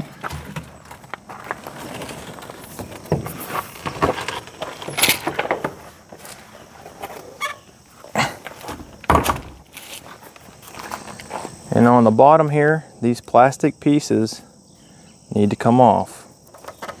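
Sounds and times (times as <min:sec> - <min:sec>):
knocks and thumps of a door: 0:08.7 - 0:09.6.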